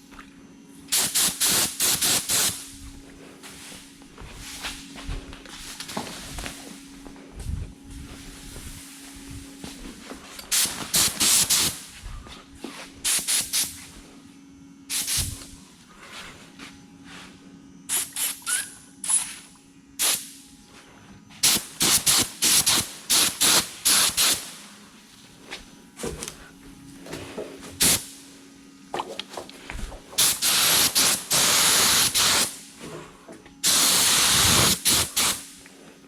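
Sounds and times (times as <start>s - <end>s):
steady low hum: 0.0s - 36.0s
spray gun hissing: 0.9s - 2.7s, 10.5s - 12.0s, 13.0s - 13.9s, 14.9s - 15.5s, 17.9s - 19.4s, 20.0s - 20.3s, 21.4s - 24.6s, 27.8s - 28.1s, 30.2s - 32.6s, 33.6s - 35.6s.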